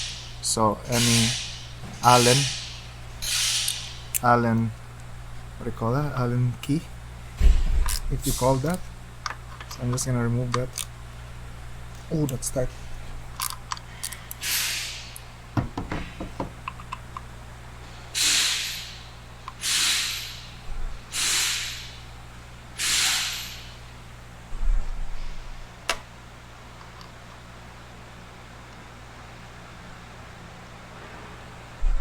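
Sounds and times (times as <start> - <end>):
short hissing bursts: 0.0 - 4.2, 14.4 - 15.2, 18.2 - 22.1, 22.8 - 23.8.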